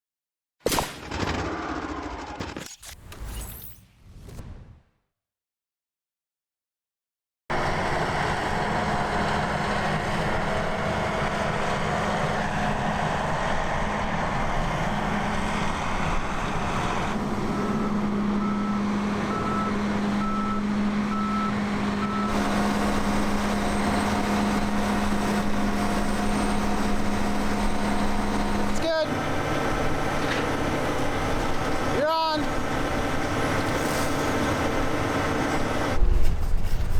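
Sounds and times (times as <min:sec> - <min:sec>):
machinery engine humming: 0:07.5 - 0:36.9
backup alarm beeping: 0:18.4 - 0:23.8.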